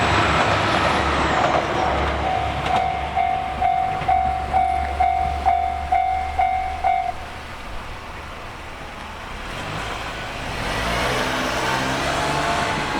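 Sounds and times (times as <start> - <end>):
road vehicle: 0.0 - 12.9
level crossing alarm ringing: 2.2 - 7.3.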